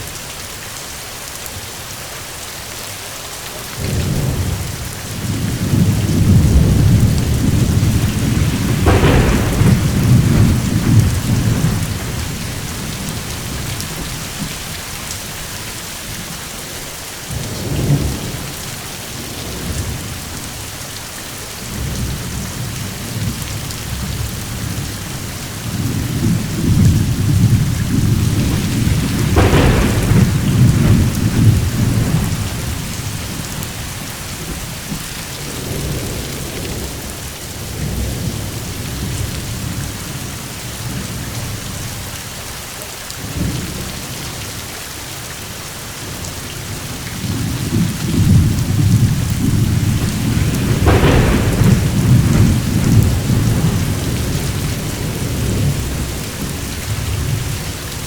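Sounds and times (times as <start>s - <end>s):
steady rain: 0.0s - 58.0s
thunder crack: 3.8s - 16.3s, 21.8s - 39.8s, 46.7s - 58.0s
rolling thunder: 3.8s - 20.6s, 21.6s - 42.1s, 46.0s - 58.0s.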